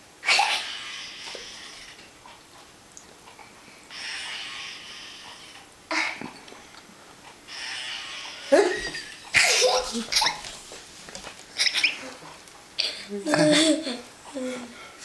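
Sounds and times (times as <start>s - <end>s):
fart sound effects from small speaker: 3.9s - 5.2s, 7.5s - 9.0s.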